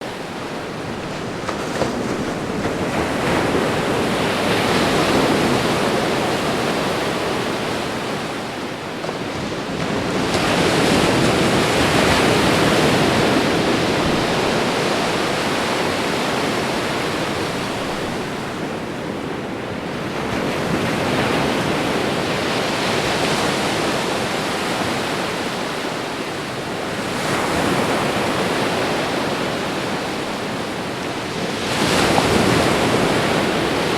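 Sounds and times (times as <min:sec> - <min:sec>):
ocean waves on shore: 0:00.0 - 0:33.9.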